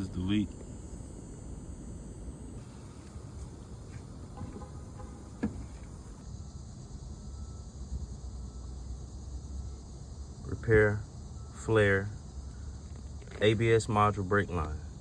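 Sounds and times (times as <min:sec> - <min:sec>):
low background rumble: 0:00.0 - 0:10.4.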